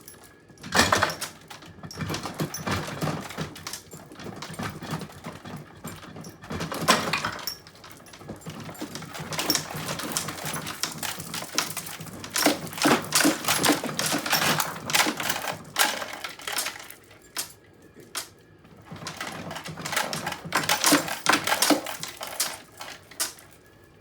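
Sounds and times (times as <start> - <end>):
dollhouse pieces rattling: 5.9 - 17.5, 18.9 - 23.5.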